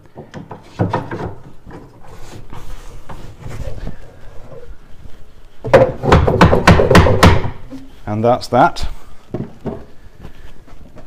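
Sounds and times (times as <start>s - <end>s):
wood scraping on wood: 0.2s - 6.6s.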